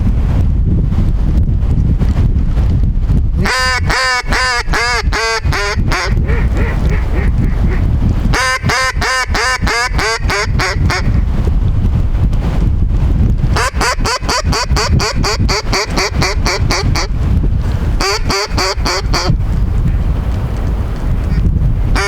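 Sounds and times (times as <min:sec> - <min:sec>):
wind rumbling on microphone: 0:00.0 - 0:22.0
duck quacking: 0:03.4 - 0:11.2, 0:13.6 - 0:17.1, 0:18.0 - 0:19.3.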